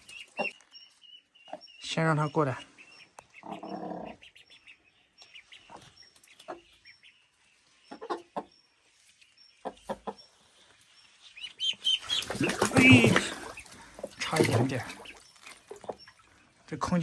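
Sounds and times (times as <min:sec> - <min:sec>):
hen clucking: 0:00.0 - 0:00.7, 0:01.4 - 0:06.7, 0:07.9 - 0:08.5, 0:09.6 - 0:10.3, 0:11.4 - 0:16.4
ducklings peeping: 0:00.0 - 0:16.9.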